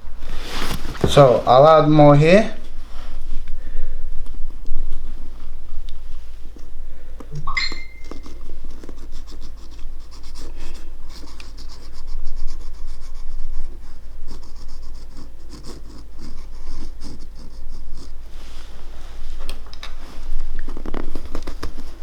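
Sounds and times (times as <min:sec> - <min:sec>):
hands scratching against shoe: 0:07.9 - 0:18.6.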